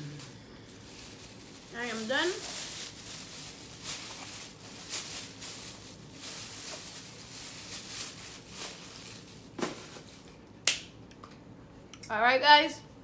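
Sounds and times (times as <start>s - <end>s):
rustling: 0.0s - 10.3s.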